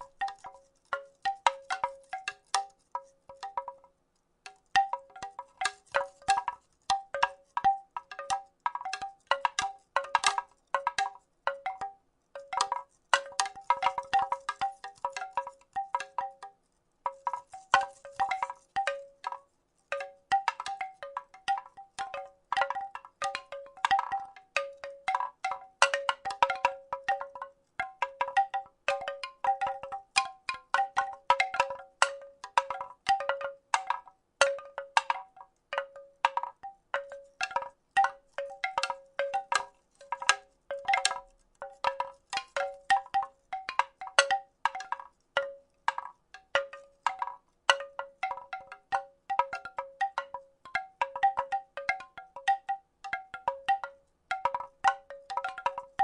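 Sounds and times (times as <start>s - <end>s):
wooden rattle clattering: 0.0s - 3.9s, 4.7s - 16.5s, 17.1s - 27.4s, 36.2s - 50.3s.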